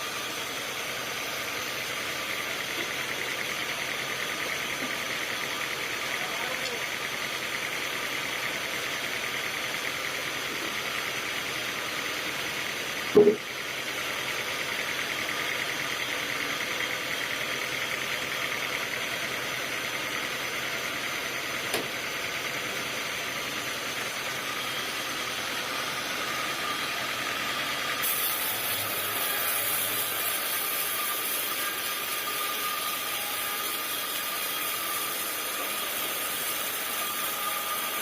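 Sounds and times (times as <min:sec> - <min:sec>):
sawmill machinery whining: 0:00.0 - 0:38.0
loud knock: 0:13.2 - 0:13.4.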